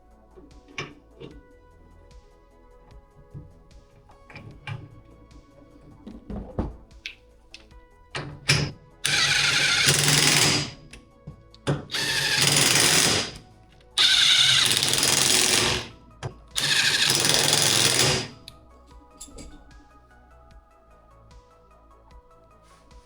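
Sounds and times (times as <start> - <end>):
power tool driving fasteners: 8.5 - 10.9, 11.7 - 13.4, 14.0 - 16.0, 16.6 - 18.5.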